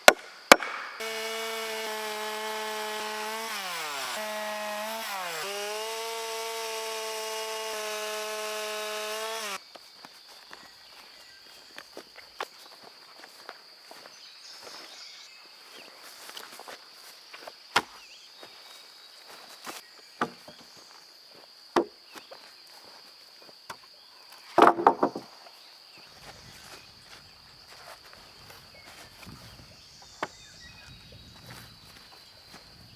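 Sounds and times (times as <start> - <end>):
high-pitched insect chorus: 9.6 - 24.5, 25.2 - 32.9.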